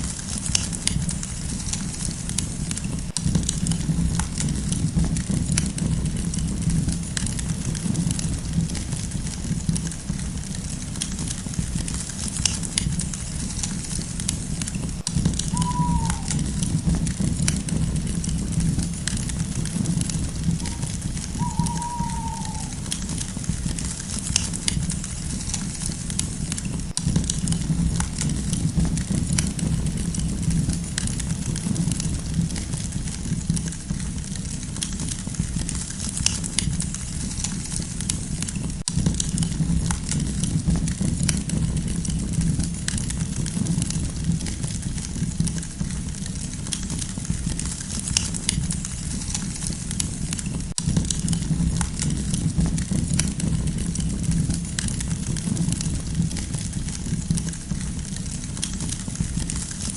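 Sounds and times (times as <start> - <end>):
campfire crackling and popping: 0.0 - 59.9.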